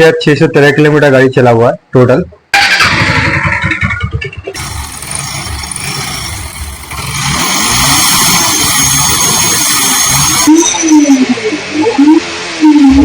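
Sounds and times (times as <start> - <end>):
motorcycle engine running harshly: 2.6 - 3.8, 4.5 - 10.7.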